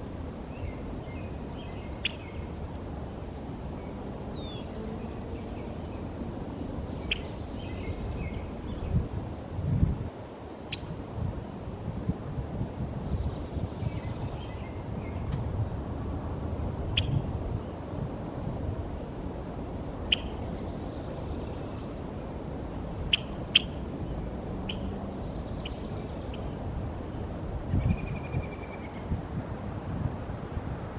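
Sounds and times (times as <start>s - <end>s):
wind rumble on microphone: 0.0s - 30.9s
bird calls with falling tail: 18.4s - 18.7s, 21.7s - 22.3s.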